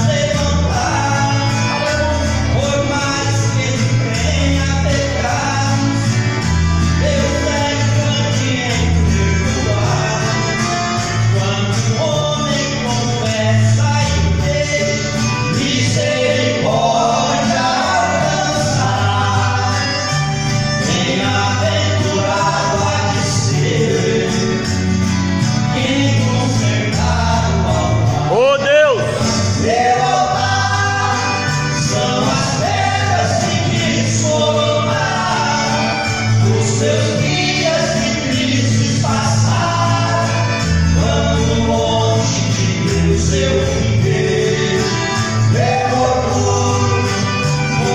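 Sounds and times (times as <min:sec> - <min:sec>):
instrumental accompaniment: 0:00.0 - 0:47.9
voices singing together: 0:00.0 - 0:47.9.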